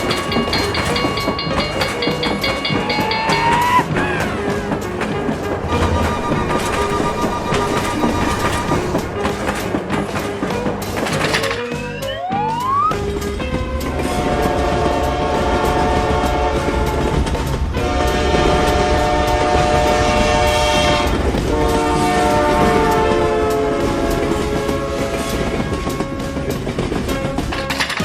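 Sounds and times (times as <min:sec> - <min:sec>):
train horn blasts: 0:00.0 - 0:09.2, 0:14.0 - 0:26.2
wheels clacking on rail joints: 0:00.0 - 0:12.1, 0:13.0 - 0:28.0.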